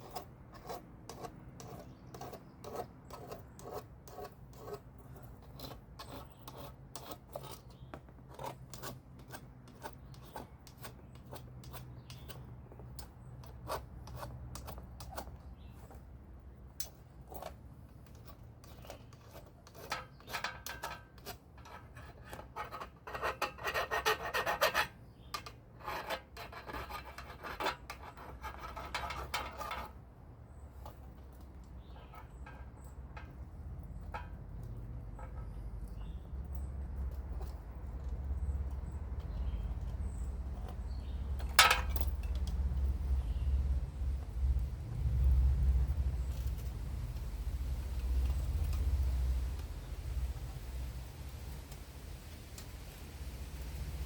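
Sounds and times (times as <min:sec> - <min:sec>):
file scraping metal: 0:00.0 - 0:12.4, 0:17.3 - 0:30.0
steady low hum: 0:29.0 - 0:54.0.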